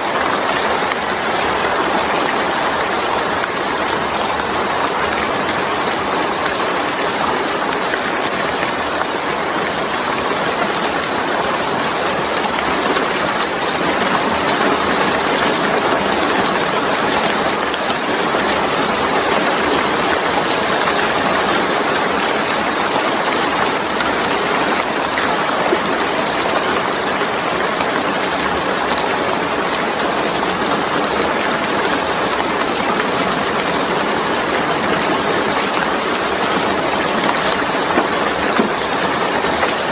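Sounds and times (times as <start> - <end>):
steady rain hissing: 0.0 - 39.9.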